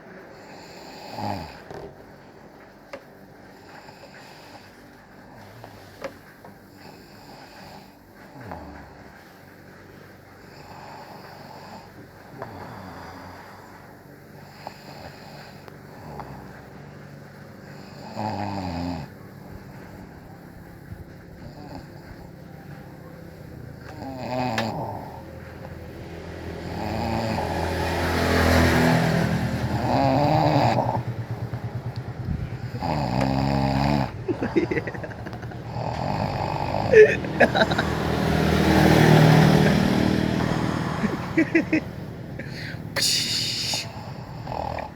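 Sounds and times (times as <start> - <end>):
breathy hiss: 0.0 - 44.9
person snoring: 0.4 - 1.7, 10.5 - 16.6, 17.6 - 19.1, 23.8 - 25.3, 26.6 - 31.5, 32.5 - 44.9.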